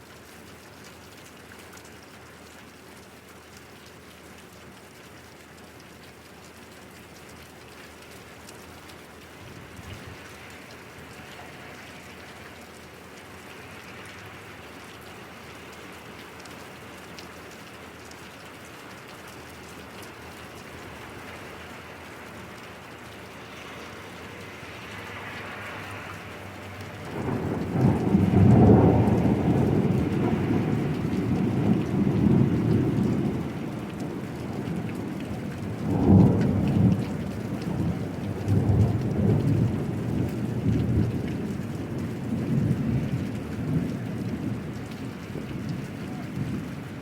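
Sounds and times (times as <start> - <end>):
steady rain: 0.0 - 47.0
rolling thunder: 27.1 - 46.8.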